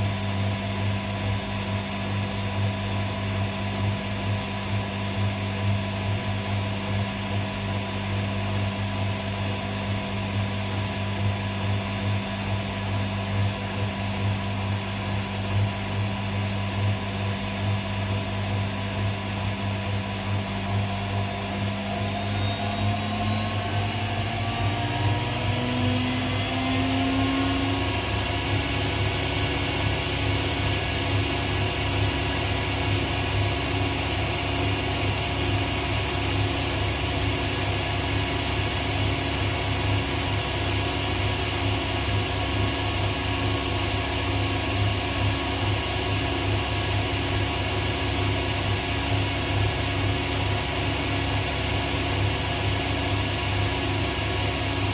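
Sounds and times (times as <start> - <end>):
washing machine spinning: 0.0 - 54.9.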